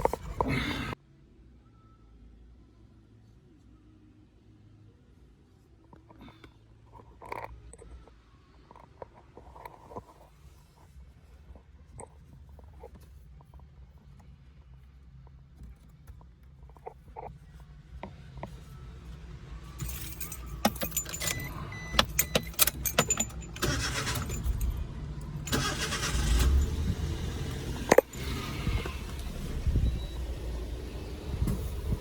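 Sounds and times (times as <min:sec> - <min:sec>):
van engine rumbling: 0:08.6 - 0:32.0.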